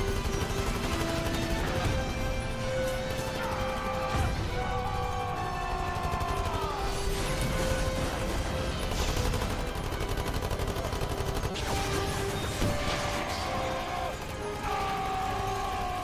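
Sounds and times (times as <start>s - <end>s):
rapid automatic gunfire: 0.0s - 16.0s.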